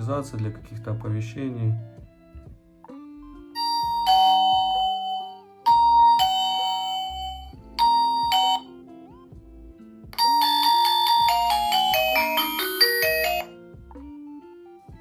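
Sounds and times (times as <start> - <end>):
two-note ding-dong chime: 3.6 - 8.7, 10.2 - 13.5.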